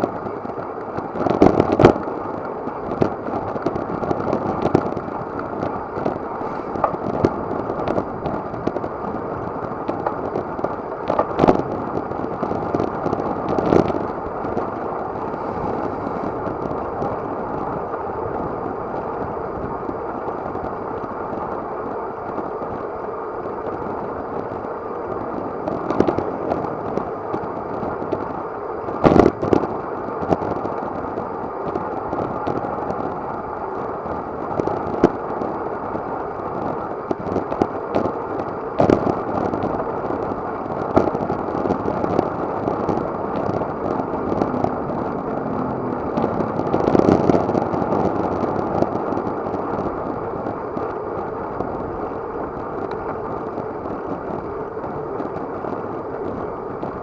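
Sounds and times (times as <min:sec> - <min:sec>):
wind rushing over camera: 0:00.0 - 0:57.0.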